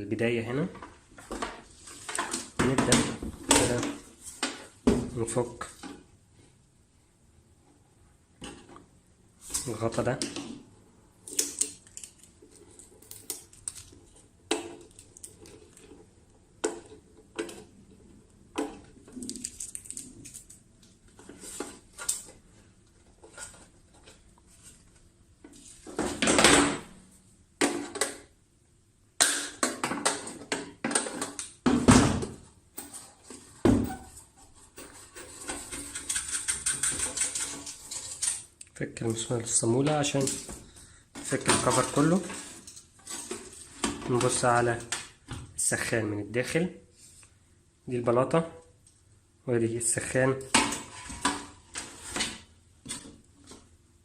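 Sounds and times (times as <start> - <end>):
metal clicking and clattering: 34.8 - 38.4.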